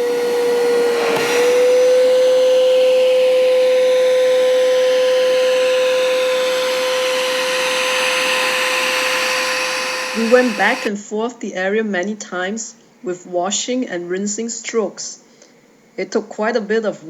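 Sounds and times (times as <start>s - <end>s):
carpet washer motor whining: 0.0s - 10.9s.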